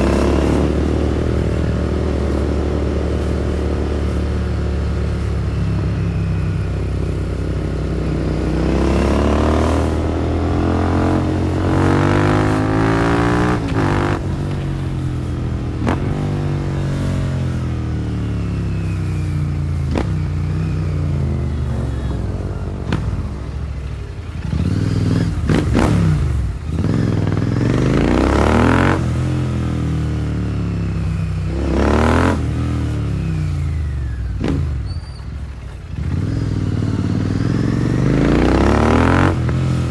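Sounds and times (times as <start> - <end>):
loud rev blips: 0.0 - 29.4
motorcycle engine revving: 0.0 - 39.9
exhaust cracks: 8.4 - 28.2.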